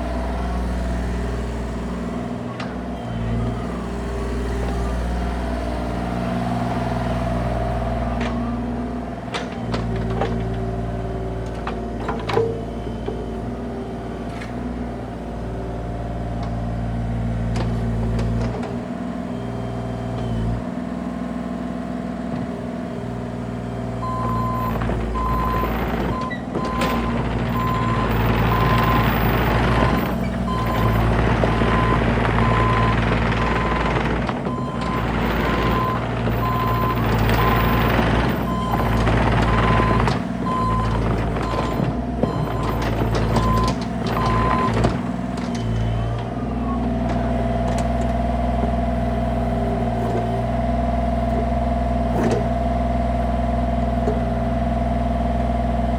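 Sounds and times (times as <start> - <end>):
excavator diesel engine running: 0.0 - 55.9.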